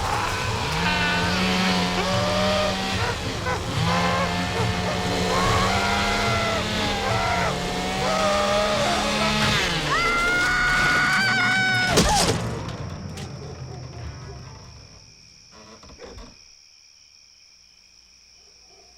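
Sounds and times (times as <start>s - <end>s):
engine running hard: 0.0s - 10.5s.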